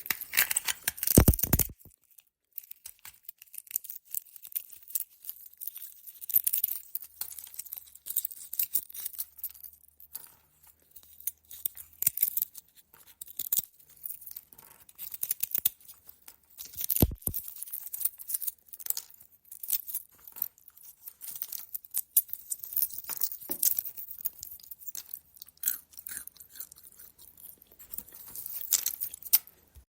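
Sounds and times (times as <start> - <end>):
walnut shells cracking: 0.0 - 1.9, 16.6 - 20.6, 21.4 - 29.5.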